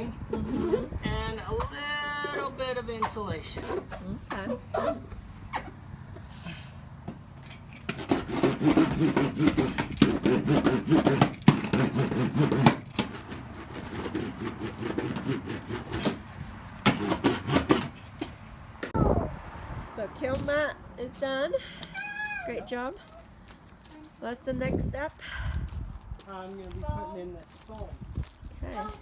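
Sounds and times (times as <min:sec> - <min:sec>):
rubbing and scraping strokes: 0:00.0 - 0:06.8, 0:07.8 - 0:18.4.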